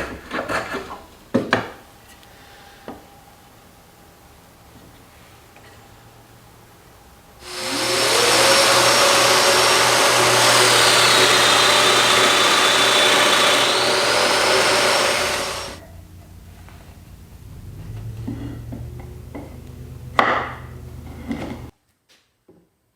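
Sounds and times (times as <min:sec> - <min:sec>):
power tool motor whining: 0:07.4 - 0:15.8.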